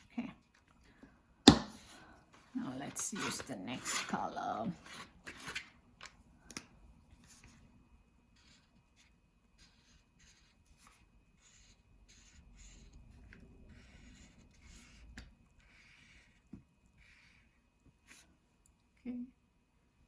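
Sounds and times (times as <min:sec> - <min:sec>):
colouring strokes scratching paper: 0:02.6 - 0:05.6, 0:08.3 - 0:18.3.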